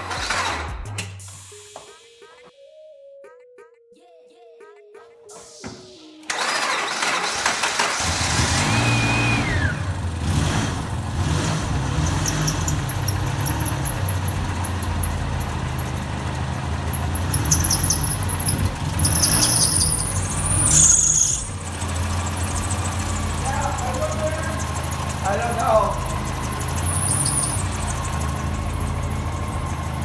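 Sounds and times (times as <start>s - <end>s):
car engine cranking and idling: 6.3s - 30.0s
high-pitched squeak: 17.0s - 21.7s, 26.8s - 28.0s
falling whistle: 19.0s - 21.6s.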